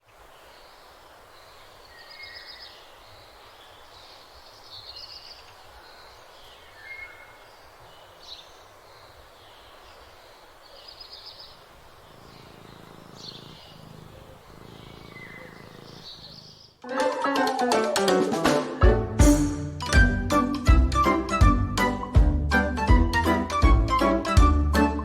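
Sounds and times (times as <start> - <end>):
background hiss: 0.0 - 25.0
small birds chirping: 0.1 - 16.8.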